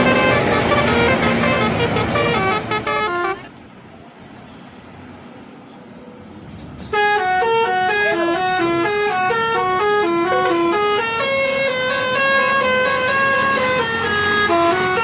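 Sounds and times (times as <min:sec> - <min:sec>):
musical air horn tune: 0:00.0 - 0:03.5, 0:06.9 - 0:15.0.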